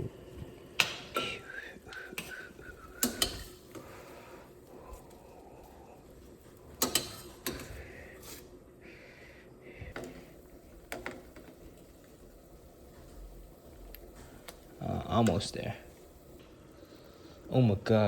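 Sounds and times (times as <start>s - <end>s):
faint sizzle: 0.0s - 18.0s
utensils clinking against pan: 3.0s - 3.8s, 6.8s - 7.7s.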